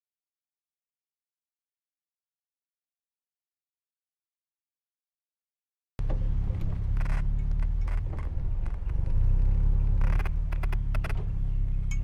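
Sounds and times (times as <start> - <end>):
microphone bumps and rustles: 6.0 - 11.4
car engine exhaust rumble: 6.0 - 12.0.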